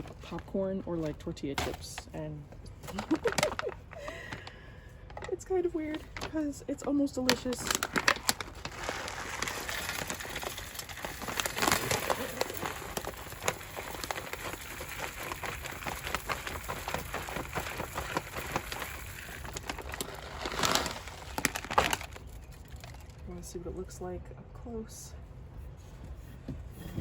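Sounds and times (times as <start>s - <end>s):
dry bird seed pouring: 7.6s - 23.2s.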